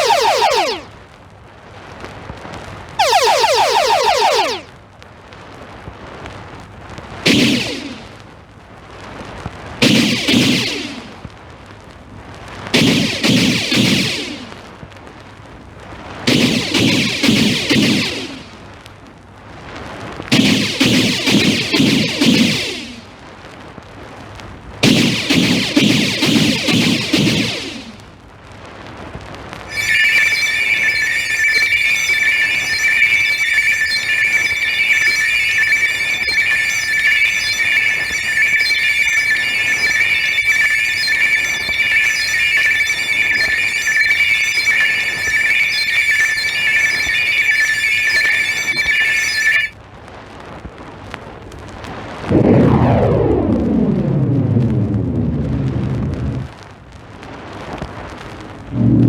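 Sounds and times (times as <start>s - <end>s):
warbling electronic tone: 0.0s - 0.9s, 3.0s - 4.7s, 7.3s - 8.2s, 9.8s - 11.2s, 12.8s - 14.6s, 16.3s - 18.6s, 20.3s - 23.1s, 24.8s - 28.1s, 29.7s - 49.7s, 52.3s - 56.6s, 58.6s - 59.0s
low electronic gliding sound: 52.3s - 56.5s, 58.7s - 59.0s.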